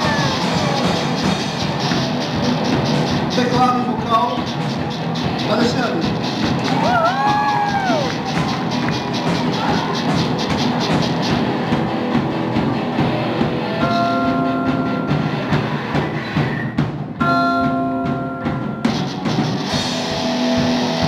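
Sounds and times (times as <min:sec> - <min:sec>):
drum kit playing: 0:00.0 - 0:21.0
live rock band: 0:00.0 - 0:21.0
bell-like tones ringing: 0:13.8 - 0:15.4, 0:17.2 - 0:19.1.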